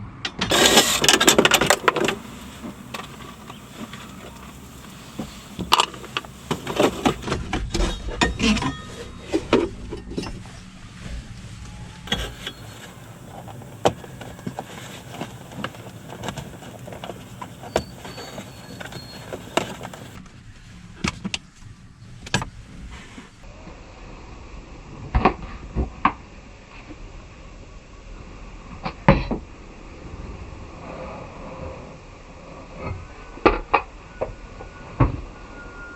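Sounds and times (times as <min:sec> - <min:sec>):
hand tools clicking and clinking: 0:00.5 - 0:07.3, 0:12.1 - 0:20.2.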